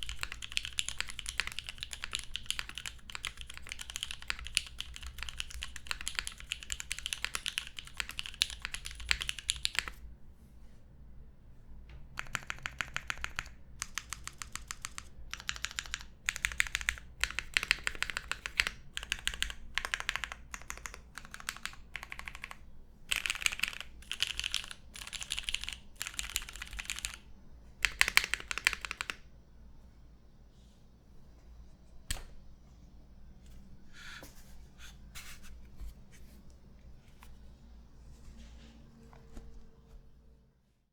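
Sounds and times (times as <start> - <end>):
mechanical keyboard typing: 0.0 - 10.0, 12.2 - 29.2.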